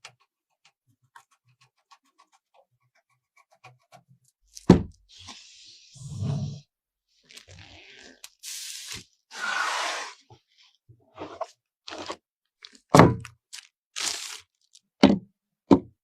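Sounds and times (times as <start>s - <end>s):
packaging crinkling: 13.5s - 14.8s.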